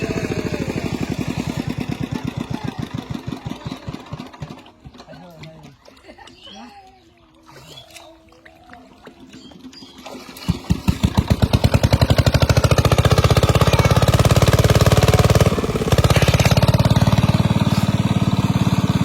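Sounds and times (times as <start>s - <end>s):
small engine running: 0.0s - 5.1s, 9.8s - 19.0s.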